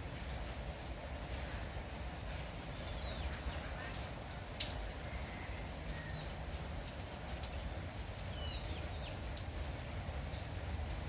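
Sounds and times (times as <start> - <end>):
small birds chirping: 2.3 - 5.2, 7.6 - 10.6.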